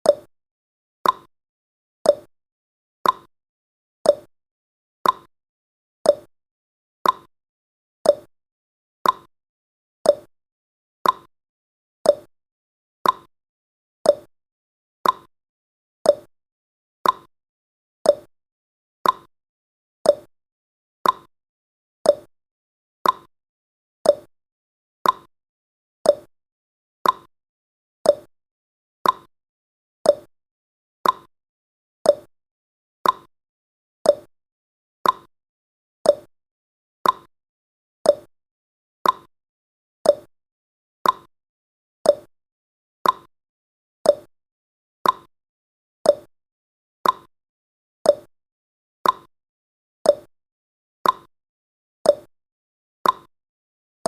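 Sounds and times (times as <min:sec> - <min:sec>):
timer ticking: 0:01.0 - 0:01.3, 0:02.1 - 0:02.3, 0:03.0 - 0:03.3, 0:04.1 - 0:04.3, 0:05.0 - 0:05.3, 0:06.1 - 0:06.3, 0:07.0 - 0:07.3, 0:08.1 - 0:08.3, 0:09.0 - 0:09.3, 0:10.1 - 0:10.3, 0:11.0 - 0:11.3, 0:12.1 - 0:12.3, 0:13.0 - 0:13.3, 0:14.1 - 0:14.3, 0:15.0 - 0:15.3, 0:16.1 - 0:16.3, 0:17.0 - 0:17.3, 0:18.1 - 0:18.3, 0:19.0 - 0:19.3, 0:20.1 - 0:20.3, 0:21.0 - 0:21.3, 0:22.0 - 0:22.3, 0:23.0 - 0:23.3, 0:24.0 - 0:24.3, 0:25.0 - 0:25.3, 0:26.0 - 0:26.3, 0:27.0 - 0:27.3, 0:28.0 - 0:28.3, 0:29.0 - 0:29.3, 0:30.0 - 0:30.3, 0:31.0 - 0:31.3, 0:32.1 - 0:32.3, 0:33.0 - 0:33.3, 0:34.0 - 0:34.3, 0:35.0 - 0:35.3, 0:36.0 - 0:36.3, 0:37.0 - 0:37.3, 0:38.0 - 0:38.3, 0:39.0 - 0:39.3, 0:40.0 - 0:40.3, 0:41.0 - 0:41.3, 0:42.0 - 0:42.3, 0:43.0 - 0:43.3, 0:44.1 - 0:44.3, 0:45.0 - 0:45.3, 0:46.1 - 0:46.3, 0:47.0 - 0:47.3, 0:48.1 - 0:48.3, 0:49.0 - 0:49.3, 0:50.1 - 0:50.3, 0:51.0 - 0:51.3, 0:52.1 - 0:52.3, 0:53.0 - 0:53.3.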